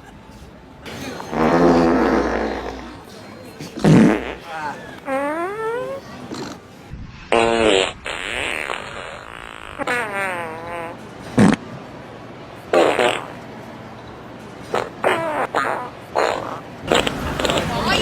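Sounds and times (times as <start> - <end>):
fart sounds: 1.2 - 3.1, 3.8 - 6.6, 7.3 - 11.6, 12.7 - 13.4, 14.7 - 18.0.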